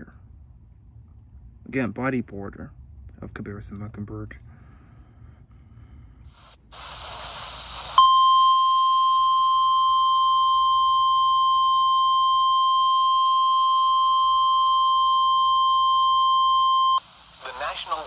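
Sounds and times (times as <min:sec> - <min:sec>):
radio static hiss: 0:06.3 - 0:08.5, 0:15.8 - 0:18.0
steady alarm tone: 0:08.0 - 0:17.1.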